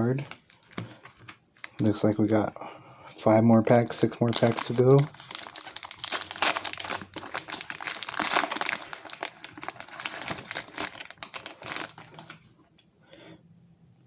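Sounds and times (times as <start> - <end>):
foil wrapper crinkling: 3.9 - 12.5.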